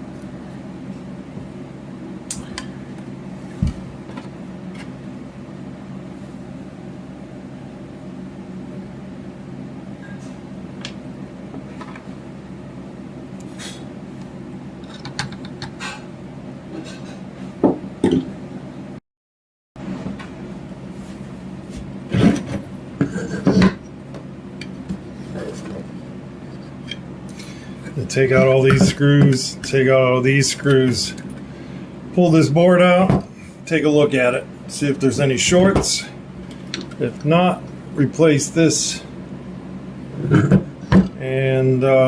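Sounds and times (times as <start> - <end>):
low steady hum: 19.8 - 42.0.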